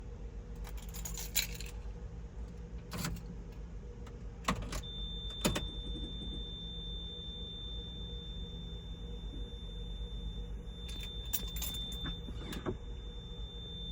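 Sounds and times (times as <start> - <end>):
car keys jangling and clicking: 0.6 - 1.9, 2.8 - 3.4, 10.8 - 12.8
steady high-pitched tone: 4.8 - 13.9.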